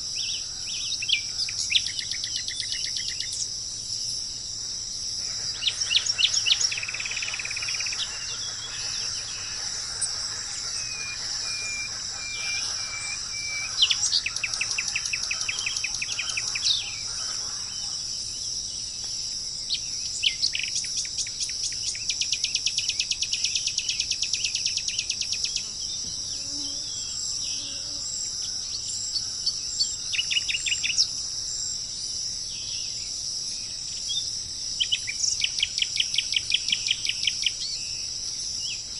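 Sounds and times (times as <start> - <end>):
birds chirping and trilling: 0.0 - 4.3, 5.0 - 31.2
high-pitched insect drone: 2.0 - 19.3.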